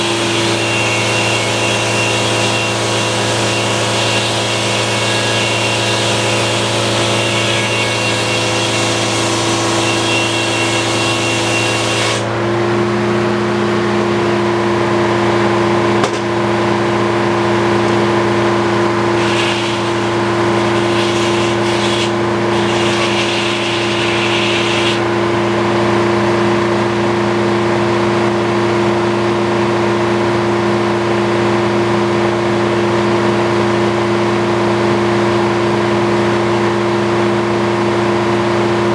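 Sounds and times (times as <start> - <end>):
circular saw cutting log: 0.0 - 13.0, 15.2 - 27.2
power unit droning: 0.0 - 30.4.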